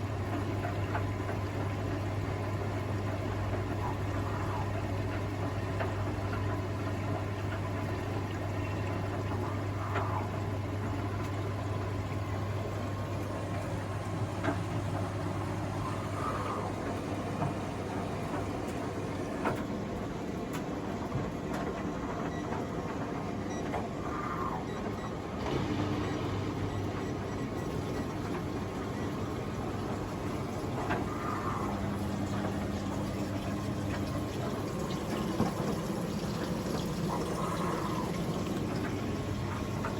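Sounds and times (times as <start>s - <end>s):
washing machine humming: 0.0s - 39.9s.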